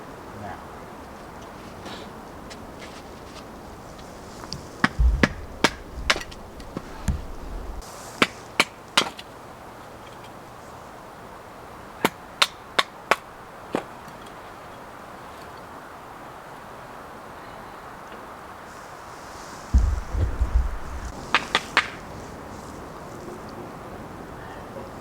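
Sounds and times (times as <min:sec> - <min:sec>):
heavy thumps: 0:04.3 - 0:07.8, 0:19.6 - 0:21.3
axe chopping wood: 0:04.6 - 0:07.8.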